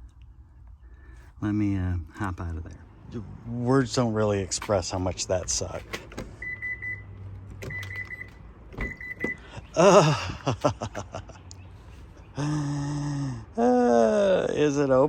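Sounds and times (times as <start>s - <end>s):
trilled warning chime beeps: 6.4s - 9.4s.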